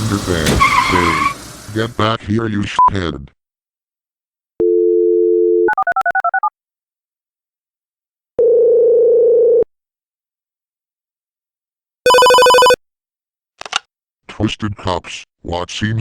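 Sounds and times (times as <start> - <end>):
telephone dial tone: 4.6 - 6.5, 8.4 - 9.7, 12.1 - 12.8
telephone ringing tone: 4.6 - 6.5, 8.4 - 9.7, 12.1 - 12.8
touch-tone keypad beeps: 12.1 - 12.8.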